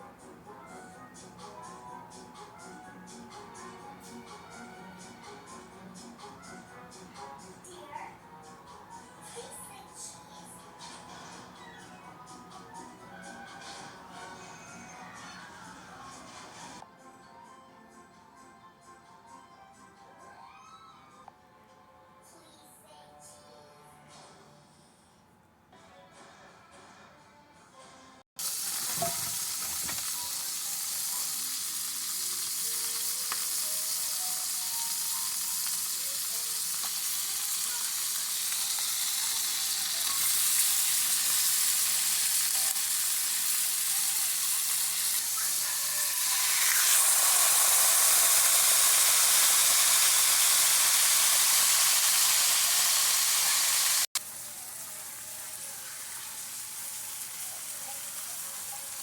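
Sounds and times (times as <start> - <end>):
food sizzling in a pan: 28.4 - 59.0.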